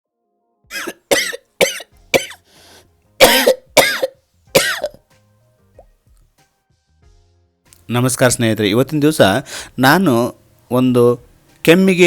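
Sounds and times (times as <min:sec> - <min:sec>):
person coughing: 0:00.7 - 0:02.4, 0:03.2 - 0:05.0.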